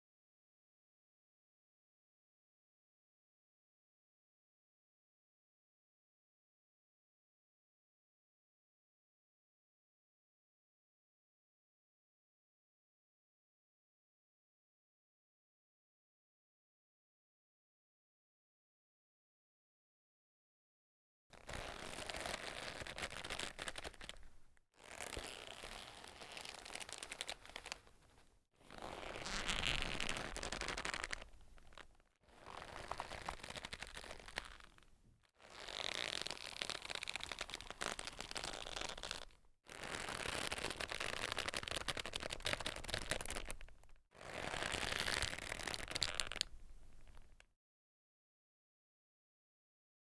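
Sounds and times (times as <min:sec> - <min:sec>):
leather creaking and rubbing: 0:21.4 - 0:34.9, 0:35.5 - 0:47.4.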